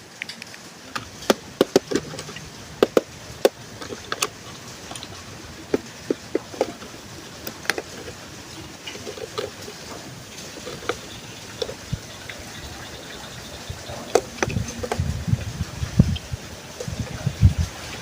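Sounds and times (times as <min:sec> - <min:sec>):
steady background hiss: 0:00.0 - 0:18.0
plastic toy being handled: 0:00.2 - 0:12.5, 0:13.8 - 0:15.2.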